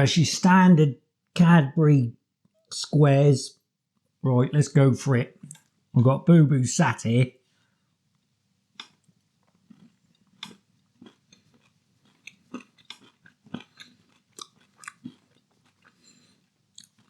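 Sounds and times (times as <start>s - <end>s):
person chewing crunchy chocolate: 8.7s - 17.0s.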